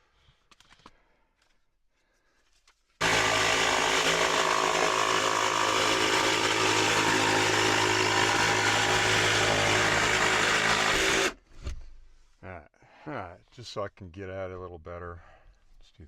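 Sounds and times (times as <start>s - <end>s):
electric power saw cutting: 3.0s - 11.4s.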